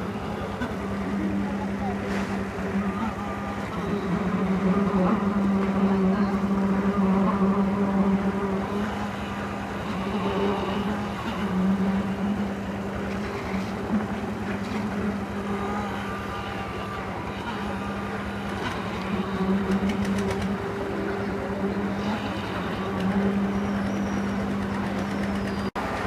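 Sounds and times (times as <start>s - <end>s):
construction machinery droning: 0.0s - 26.0s
sharp clicks: 23.8s - 25.7s.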